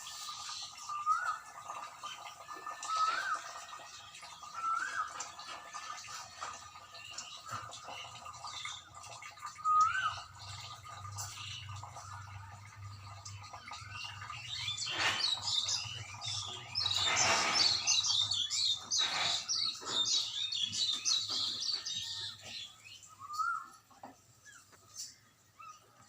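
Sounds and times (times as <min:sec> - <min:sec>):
small birds chirping: 0:00.0 - 0:26.0.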